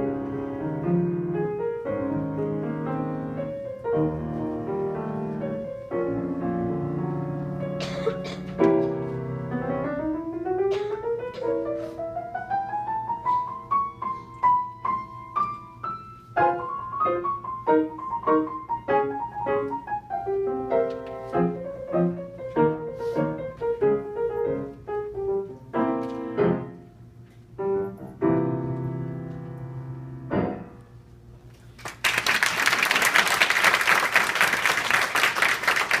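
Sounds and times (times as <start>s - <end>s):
piano playing: 0.0s - 31.3s
applause: 31.8s - 36.0s.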